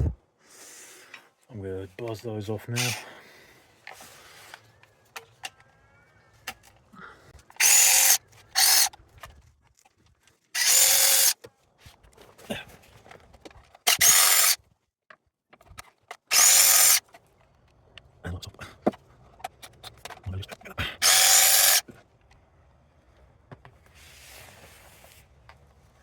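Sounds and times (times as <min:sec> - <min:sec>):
power driver whirring: 0:07.6 - 0:08.9, 0:10.6 - 0:11.4, 0:13.9 - 0:14.6, 0:16.3 - 0:17.0, 0:21.0 - 0:21.8.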